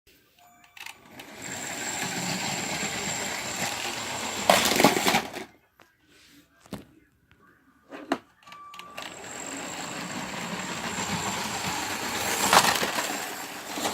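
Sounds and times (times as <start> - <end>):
toy train motor whine: 1.0 - 5.3, 8.9 - 13.9
plastic toy train crashing: 1.2 - 5.5, 9.0 - 13.9.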